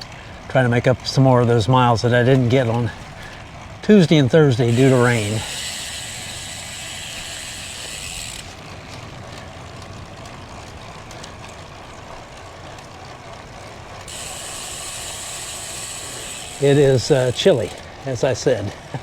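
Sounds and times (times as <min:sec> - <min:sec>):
bike freewheel ticking: 0:00.0 - 0:19.0.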